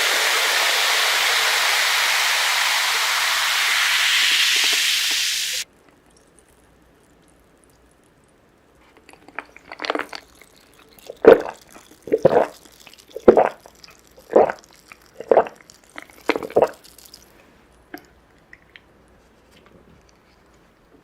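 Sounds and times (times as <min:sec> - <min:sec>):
wet squishy chewing: 0:09.0 - 0:17.3.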